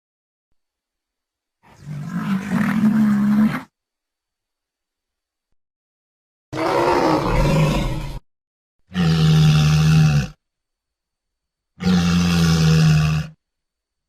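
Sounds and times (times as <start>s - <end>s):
low-pitched creature call: 6.5s - 8.2s, 11.8s - 13.4s
raspy creature roar: 6.5s - 8.2s, 8.9s - 10.4s, 11.8s - 13.4s.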